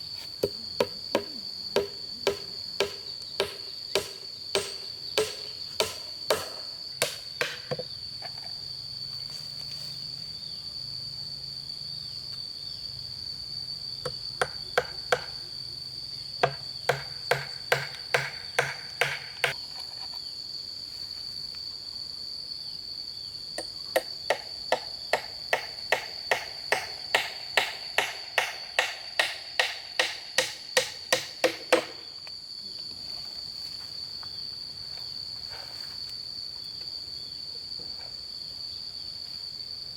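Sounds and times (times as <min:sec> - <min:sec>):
insects droning: 0:00.0 - 0:39.9
hammer striking: 0:01.2 - 0:07.8, 0:16.4 - 0:19.6, 0:24.0 - 0:32.0.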